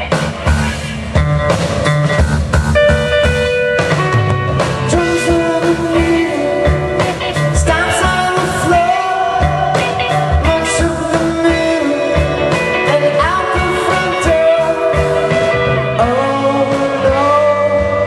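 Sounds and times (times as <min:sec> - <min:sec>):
live rock band playing: 0:00.0 - 0:18.0.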